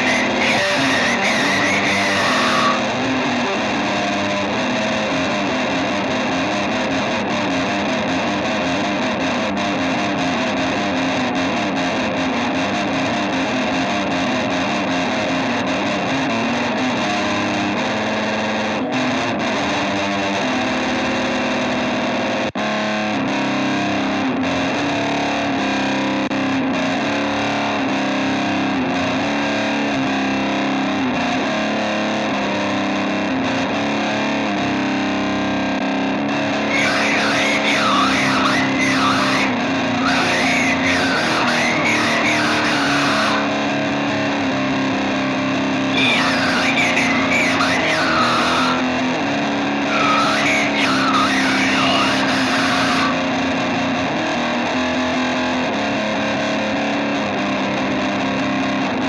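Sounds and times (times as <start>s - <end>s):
loud rock band: 0.0s - 3.5s, 36.6s - 43.8s, 45.9s - 49.0s, 49.8s - 53.4s
distorted electric guitar riffs: 0.0s - 59.0s.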